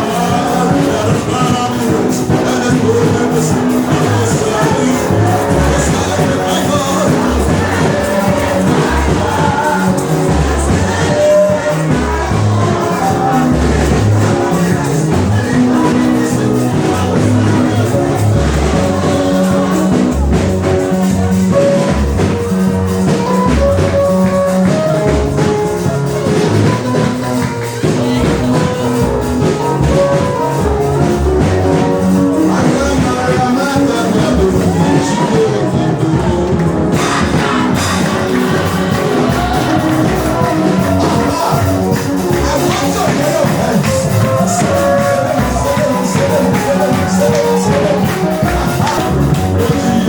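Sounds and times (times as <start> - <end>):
people singing: 0.0 - 50.0
pulsing bass line: 0.0 - 50.0
sustained keyboard notes: 0.0 - 50.0
tambourine shaken: 36.3 - 50.0.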